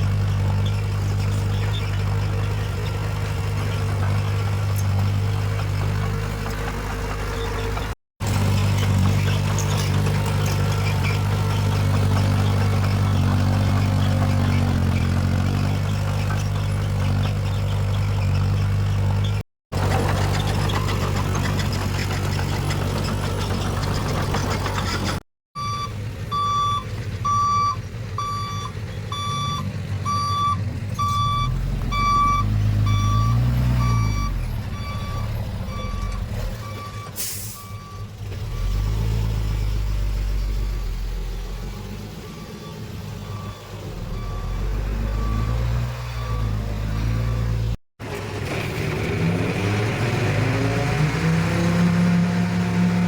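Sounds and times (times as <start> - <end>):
heavy diesel engine running: 0.0 - 53.0
reversing alarm beeping: 25.6 - 38.8, 42.2 - 47.6.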